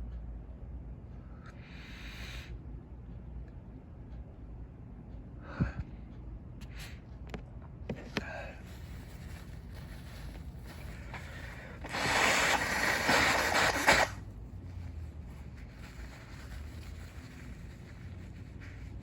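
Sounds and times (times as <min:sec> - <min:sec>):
person blowing nose: 0:10.9 - 0:14.2.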